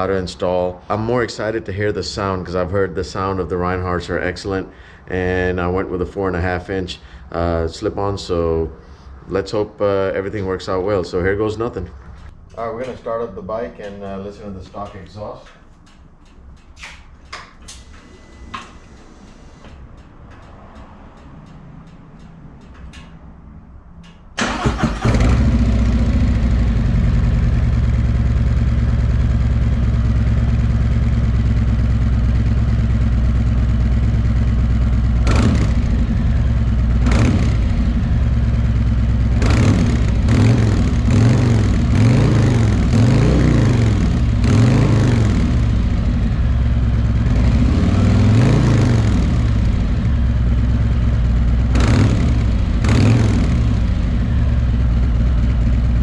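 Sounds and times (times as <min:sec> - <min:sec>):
motorcycle engine starting and idling: 0:13.8 - 0:56.0
motorcycle engine revving: 0:24.4 - 0:56.0.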